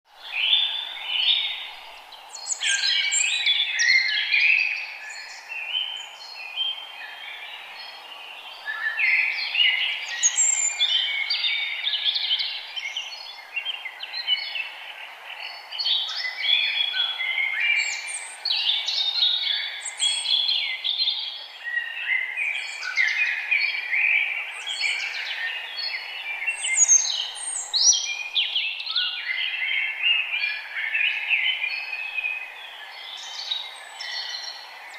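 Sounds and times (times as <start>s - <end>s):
birds chirping and singing: 15.4s - 34.9s.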